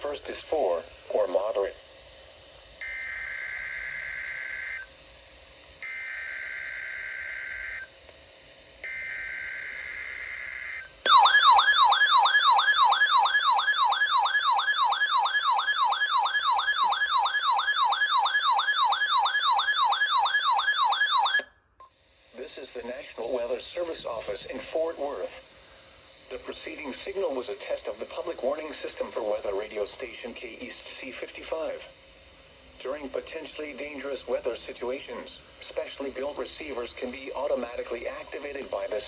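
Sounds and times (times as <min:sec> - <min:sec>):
warbling warning alarm: 0:08.8 - 0:21.5.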